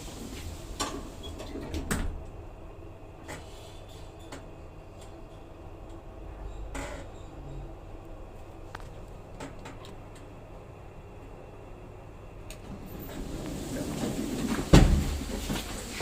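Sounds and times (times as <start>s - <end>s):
steady low hum: 1.9s - 16.0s
lift door knocks and clicks: 12.7s - 15.5s.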